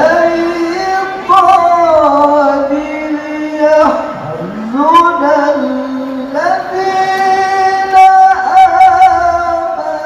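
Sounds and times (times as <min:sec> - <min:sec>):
man reciting melodically: 0:00.0 - 0:10.0.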